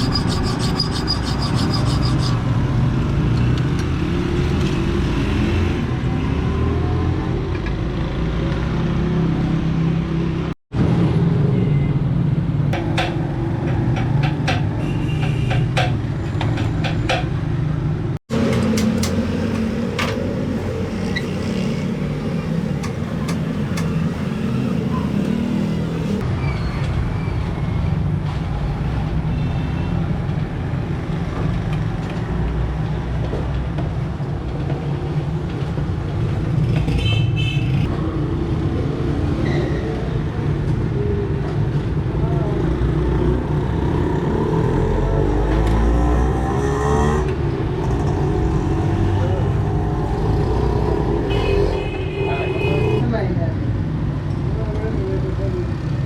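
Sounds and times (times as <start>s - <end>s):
low workshop rumble: 18.3s - 26.2s
sharp taps and clicks: 22.8s - 24.0s.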